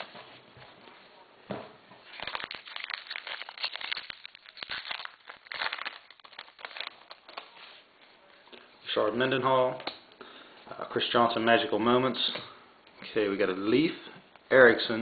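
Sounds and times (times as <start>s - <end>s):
foil wrapper crinkling: 2.1s - 7.9s.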